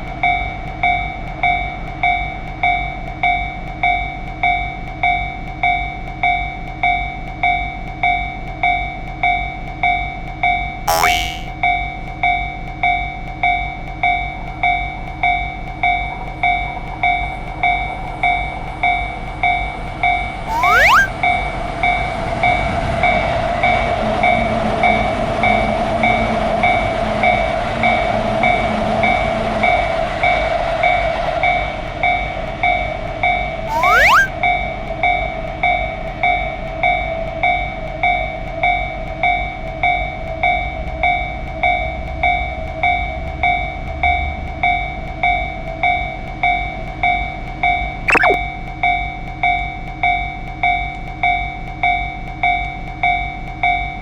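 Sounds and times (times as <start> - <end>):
sharp sounds with rising sweep: 10.9 - 11.5, 20.5 - 21.1, 33.7 - 34.3, 48.1 - 48.4
train passing with rushing noise: 21.1 - 33.5.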